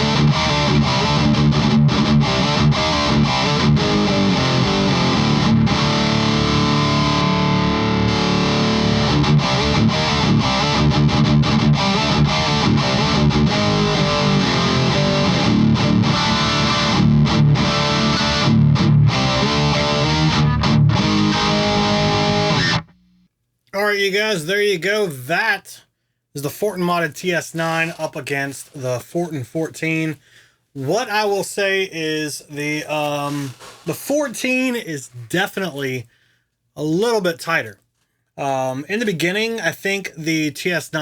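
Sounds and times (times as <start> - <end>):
distorted electric guitar riff: 0.0 - 23.3.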